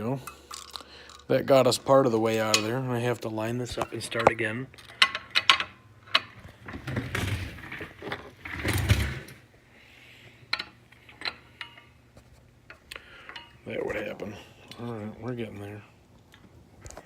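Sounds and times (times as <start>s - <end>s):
metal clicks and knocks: 3.7s - 9.1s, 10.5s - 11.9s.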